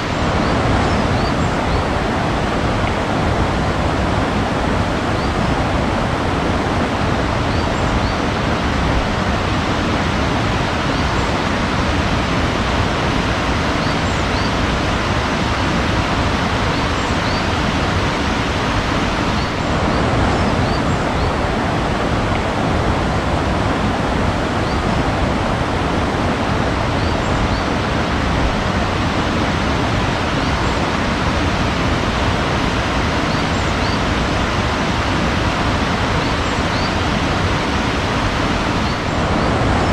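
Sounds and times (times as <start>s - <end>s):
rushing water: 0.0s - 39.9s
faint bird chirps: 13.8s - 14.6s.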